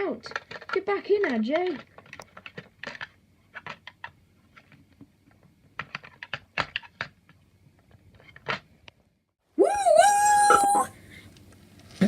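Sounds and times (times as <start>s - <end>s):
plastic toys clicking: 0.0s - 8.7s.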